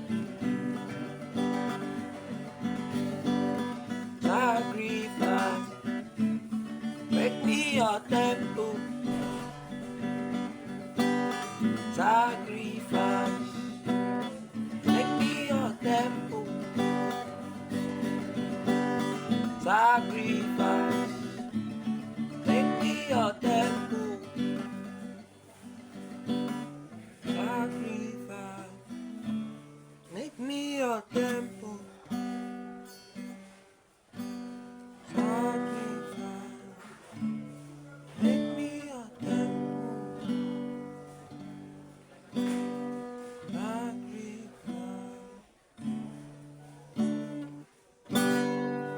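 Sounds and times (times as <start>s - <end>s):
acoustic guitar strumming chords: 0.0s - 48.9s.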